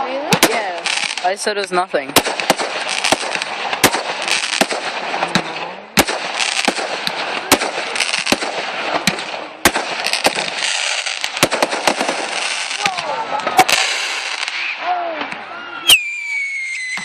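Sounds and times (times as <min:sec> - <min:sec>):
fireworks crackling: 0:00.0 - 0:17.0
firework shells bursting: 0:02.1 - 0:15.4.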